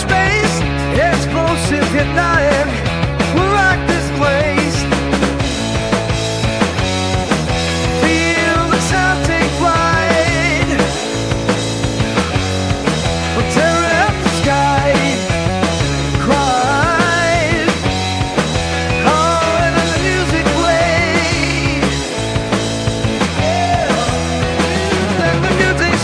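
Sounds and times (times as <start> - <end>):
psychedelic rock instrumental: 0.0 - 26.0.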